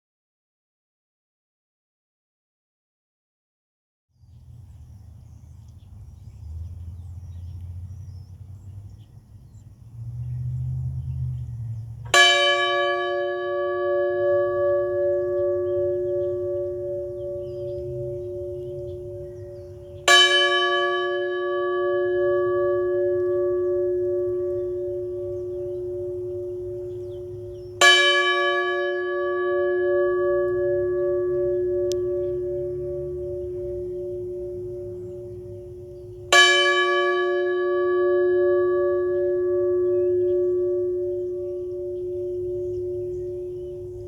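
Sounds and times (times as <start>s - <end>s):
deep bell hum: 4.3s - 44.0s
bell struck: 12.1s - 44.0s.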